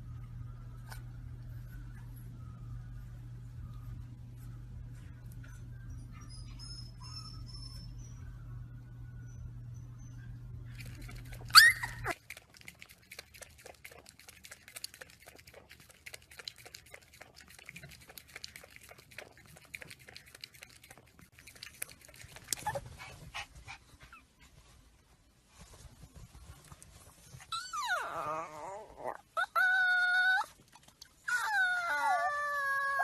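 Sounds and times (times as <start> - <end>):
puppy yelping: 10.9 - 12.2.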